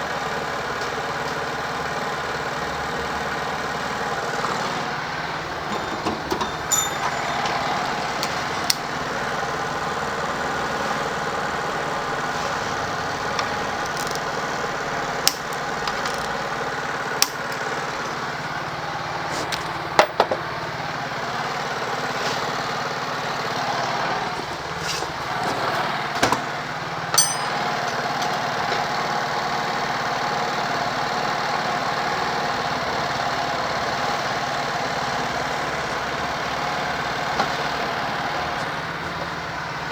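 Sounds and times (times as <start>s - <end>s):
scooter engine idling: 0.0s - 24.8s.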